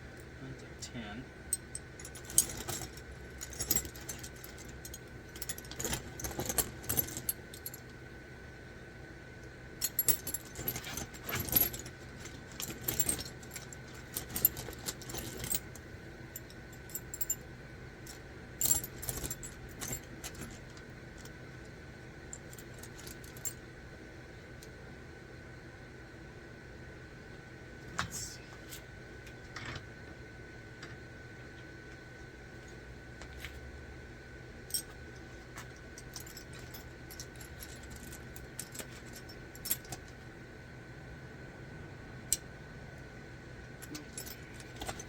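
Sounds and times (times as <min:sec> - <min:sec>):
metal tools clinking: 0:01.5 - 0:07.8, 0:09.8 - 0:15.8, 0:18.6 - 0:20.6, 0:35.6 - 0:40.1, 0:43.8 - 0:45.0.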